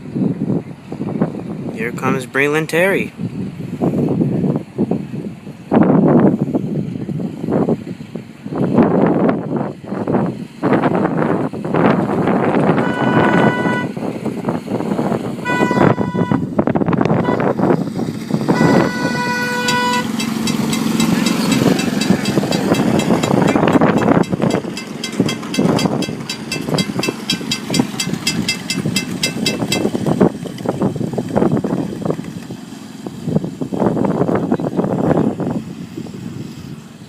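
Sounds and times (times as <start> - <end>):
train horn blasts: 12.8 - 14.0, 15.4 - 16.5, 17.2 - 17.5, 18.5 - 20.6
train rumbling past: 17.5 - 30.6
fast high ticking: 19.7 - 30.0.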